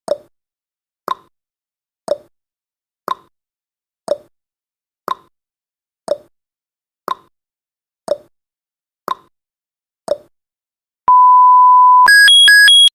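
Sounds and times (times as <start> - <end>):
loud steady beep: 11.1 - 12.9.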